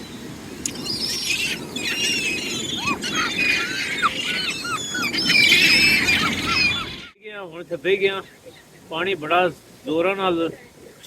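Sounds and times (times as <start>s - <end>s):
gulls squealing and calling: 0.0s - 7.2s
surf: 0.0s - 11.0s
wind: 0.0s - 11.0s.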